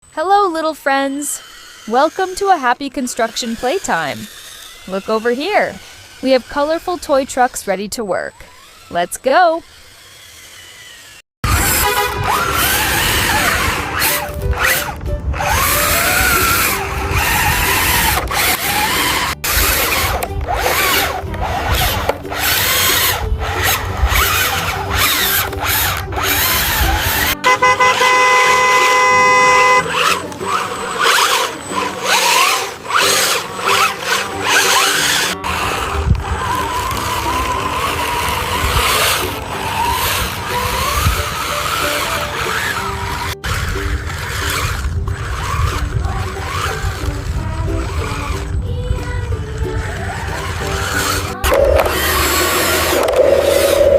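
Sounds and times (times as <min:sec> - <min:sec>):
vehicle horn: 0:11.5 - 0:13.3, 0:27.3 - 0:30.2
upbeat background music: 0:11.5 - 0:53.9
vehicle sound effects: 0:50.4 - 0:53.9.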